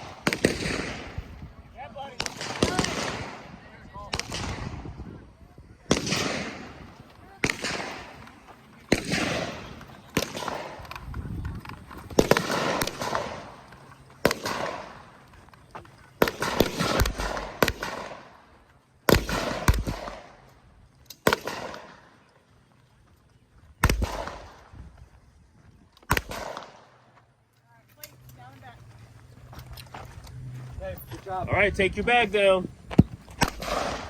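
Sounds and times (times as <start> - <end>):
gunshots with rolling echo: 0.0 - 1.4, 2.0 - 5.0, 5.9 - 11.0, 12.1 - 15.2, 16.2 - 18.4, 19.1 - 20.4, 21.2 - 22.0, 23.8 - 24.7, 26.1 - 26.9, 33.4 - 34.0.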